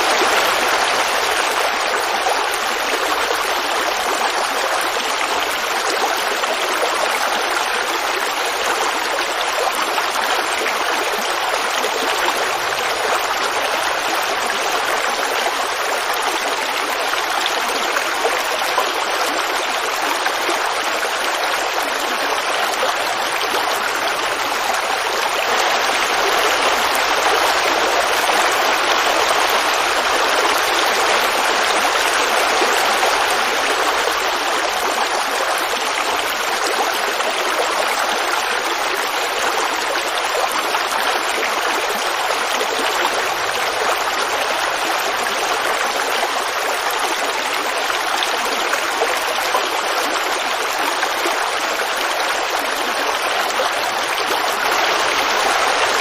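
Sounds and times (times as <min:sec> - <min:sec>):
creek water babbling over rocks: 0:00.0 - 0:56.0.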